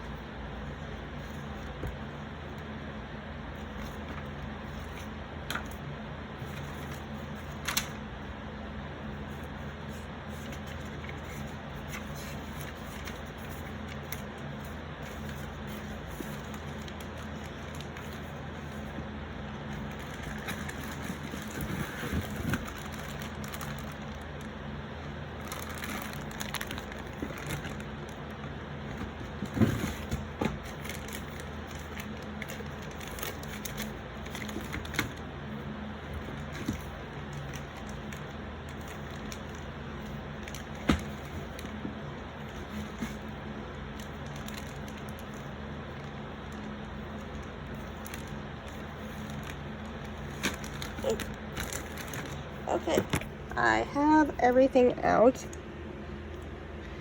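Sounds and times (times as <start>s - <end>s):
steady low hum: 0.0s - 57.0s
packaging rustling: 9.2s - 53.4s.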